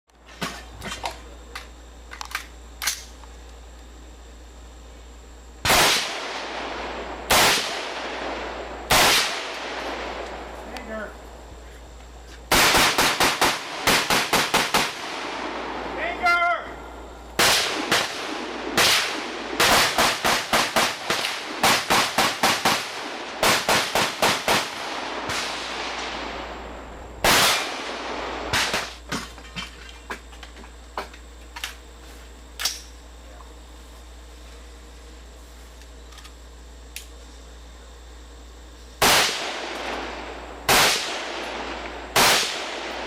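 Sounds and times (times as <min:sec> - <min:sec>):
faint gunshots: 0:05.7 - 0:10.2, 0:12.5 - 0:16.1, 0:17.4 - 0:26.5, 0:27.2 - 0:29.0, 0:39.0 - 0:43.0
rapid rifle shots: 0:05.7 - 0:10.2, 0:12.5 - 0:15.9, 0:17.4 - 0:26.3, 0:27.2 - 0:29.0, 0:39.0 - 0:43.0.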